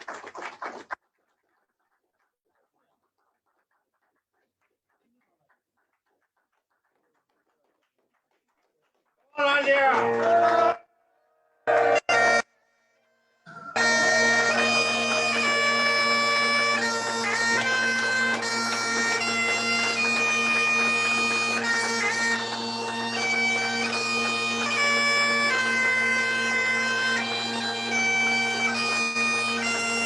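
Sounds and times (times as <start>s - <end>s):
bagpipes playing: 11.7s - 30.0s.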